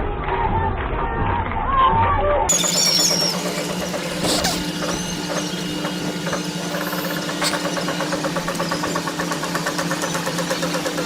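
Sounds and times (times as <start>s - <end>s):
rapid even ticking: 2.9s - 11.0s.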